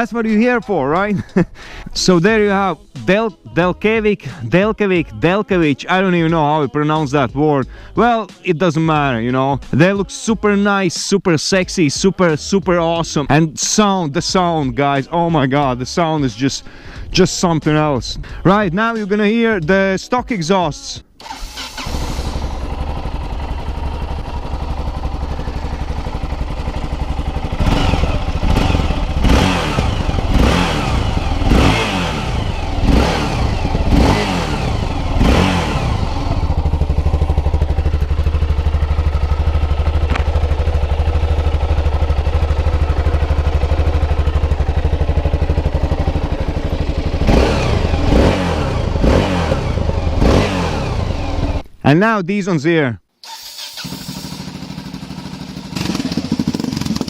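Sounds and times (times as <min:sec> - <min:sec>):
motorcycle engine idling and revving: 0:00.0 - 0:07.9, 0:21.2 - 0:51.7, 0:53.3 - 0:57.0.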